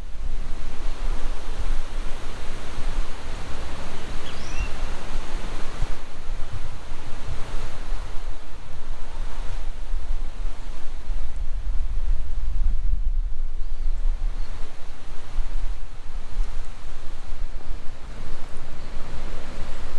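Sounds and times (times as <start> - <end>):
wind and road noise: 0.0 - 19.9
faint chirp: 4.2 - 5.0.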